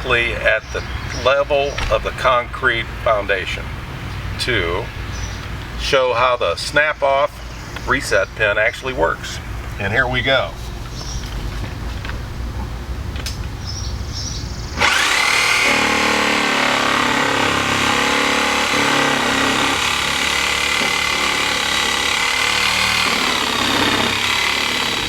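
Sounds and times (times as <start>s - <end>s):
electric saw cutting wood: 14.8s - 25.0s.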